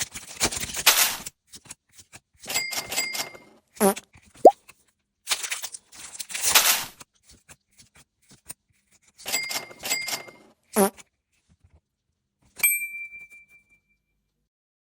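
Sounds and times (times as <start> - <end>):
bell-like ding: 12.6 - 14.0.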